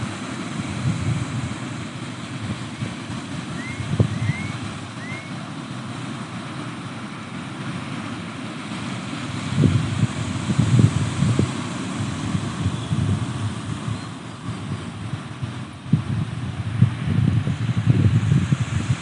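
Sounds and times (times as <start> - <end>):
wind buffeting microphone: 0.0 - 6.0, 8.7 - 19.0
ocean surf: 0.0 - 19.0
short rising chirps: 3.6 - 5.4.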